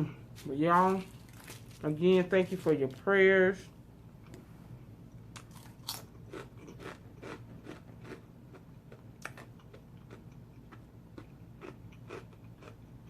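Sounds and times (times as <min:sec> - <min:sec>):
person chewing sandwich: 0:05.3 - 0:13.0.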